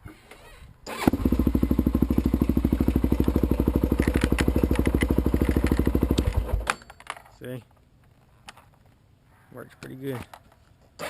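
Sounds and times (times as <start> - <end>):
quad engine idling: 1.1 - 6.7.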